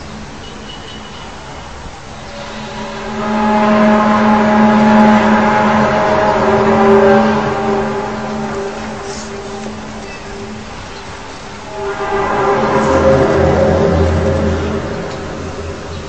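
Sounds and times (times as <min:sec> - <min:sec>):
loud horn-like drone: 0:00.0 - 0:16.0.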